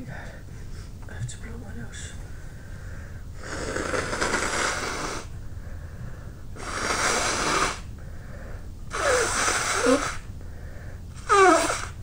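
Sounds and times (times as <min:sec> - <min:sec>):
person blowing nose: 0:03.4 - 0:05.3, 0:06.6 - 0:07.9, 0:08.9 - 0:10.3, 0:11.2 - 0:12.0.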